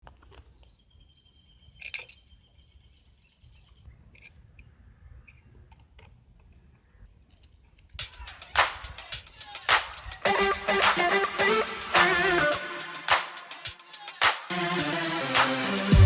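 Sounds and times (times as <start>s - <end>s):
music with strong beat: 8.0s - 16.0s
sharp sound: 8.0s - 16.0s.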